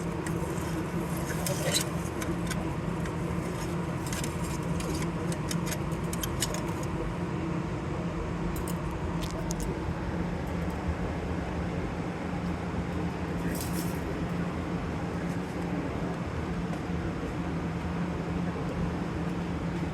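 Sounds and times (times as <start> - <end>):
machinery hum: 0.0 - 19.9.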